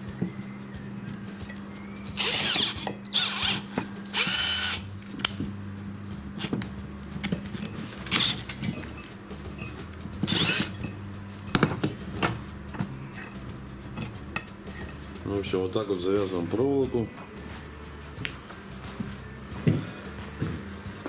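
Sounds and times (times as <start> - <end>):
cordless drill running: 1.1 - 5.3, 7.6 - 11.0.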